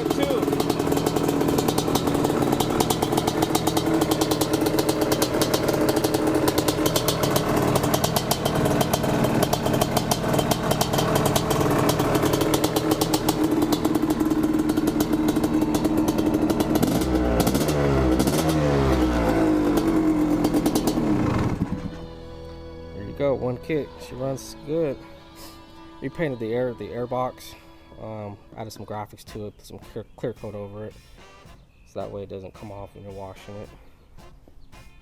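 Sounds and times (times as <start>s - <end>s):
two-stroke engine idling and revving: 0.0s - 25.5s.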